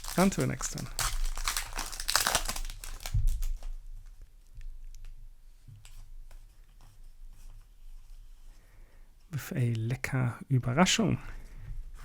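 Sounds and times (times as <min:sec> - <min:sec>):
foil wrapper crinkling: 0:00.0 - 0:03.8.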